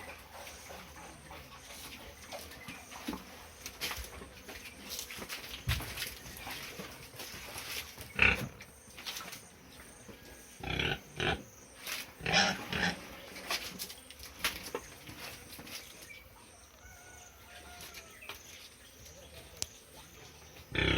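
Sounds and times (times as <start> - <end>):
pigs grunting: 8.1 - 8.6, 10.6 - 11.5, 12.2 - 13.3, 20.6 - 20.9.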